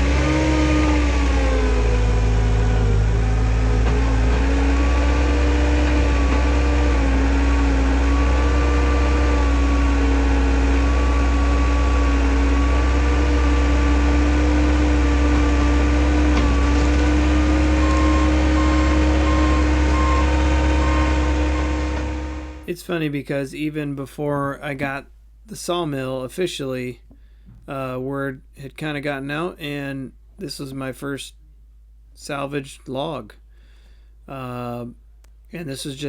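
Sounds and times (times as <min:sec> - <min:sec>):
engine humming steadily: 0:00.0 - 0:22.7.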